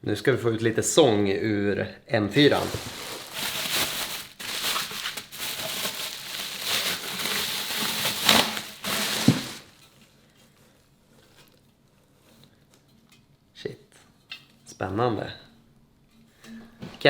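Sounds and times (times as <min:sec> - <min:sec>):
cardboard box being opened: 0:02.4 - 0:09.8.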